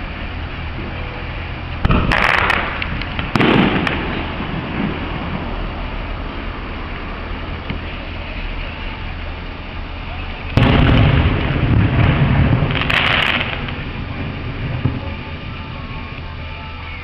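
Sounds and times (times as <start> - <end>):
fireworks bursting with crackling: 0.0 - 17.0
low background rumble: 0.0 - 17.0.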